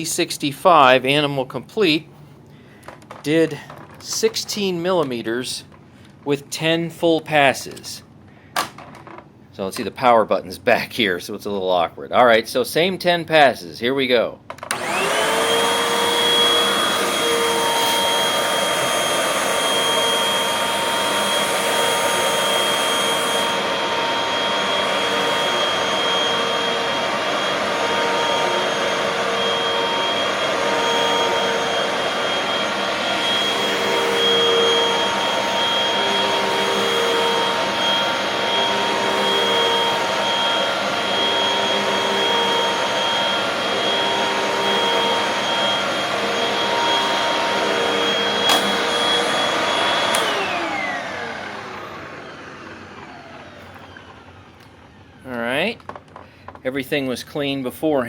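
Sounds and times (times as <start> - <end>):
upright vacuum whining on carpet: 14.7 - 55.9.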